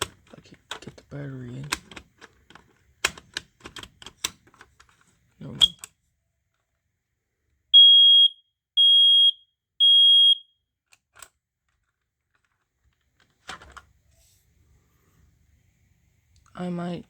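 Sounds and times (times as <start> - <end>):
smoke alarm beeps: 7.8 - 10.6.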